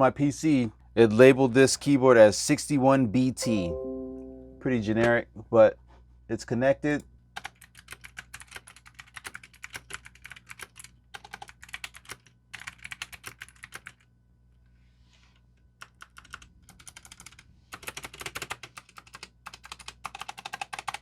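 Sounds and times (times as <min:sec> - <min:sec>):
typing on mechanical keyboard: 0:07.4 - 0:14.1, 0:15.8 - 0:21.0.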